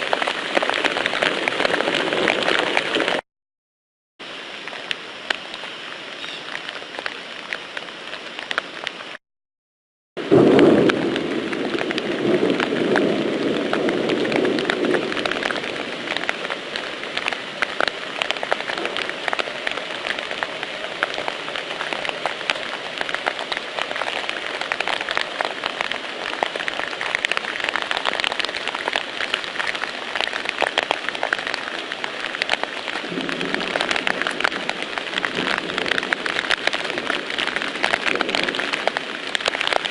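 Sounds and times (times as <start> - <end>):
water pattering: 10.8 - 39.9.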